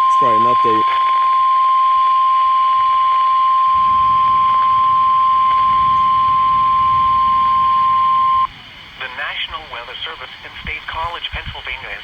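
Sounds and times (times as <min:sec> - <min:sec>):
steady warning alarm tone: 0:00.0 - 0:08.5.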